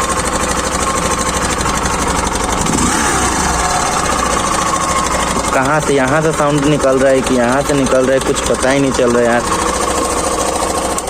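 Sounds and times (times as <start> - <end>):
motorcycle engine idling: 0.0 - 11.0
strange engine noise: 0.0 - 11.0.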